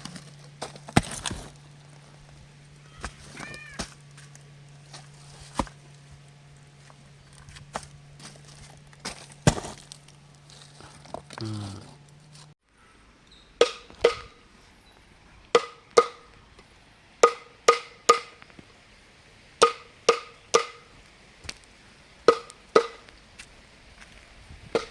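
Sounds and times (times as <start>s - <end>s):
sharp ringing knocks: 13.6s - 14.4s, 15.5s - 16.4s, 17.2s - 18.4s, 19.6s - 20.9s, 22.3s - 23.1s.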